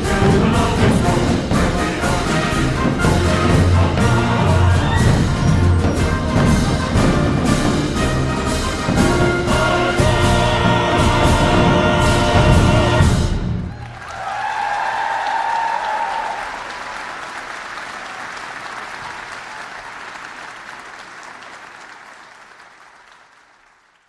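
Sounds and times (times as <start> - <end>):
choral and orchestral music: 0.0 - 14.1
crowd applause: 13.4 - 24.0.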